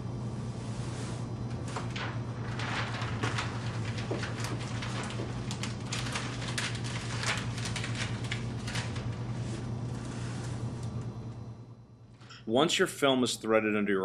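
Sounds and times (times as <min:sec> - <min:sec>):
steady low hum: 0:00.0 - 0:14.0
plastic film crackling and rustling: 0:01.5 - 0:11.0.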